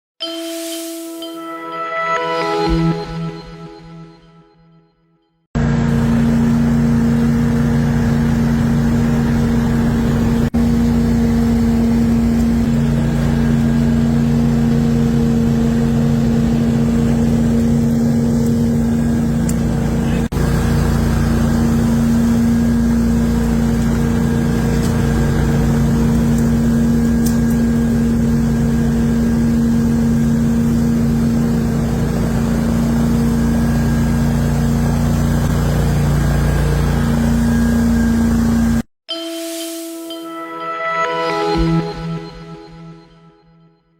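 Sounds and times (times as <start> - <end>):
shredder engine droning: 5.6 - 38.9.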